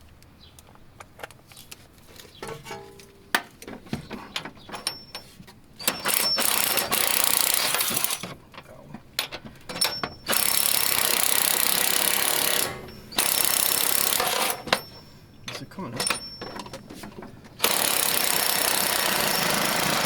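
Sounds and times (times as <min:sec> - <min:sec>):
impact wrench hammering: 0:05.8 - 0:08.2, 0:09.7 - 0:15.0, 0:17.6 - 0:20.0.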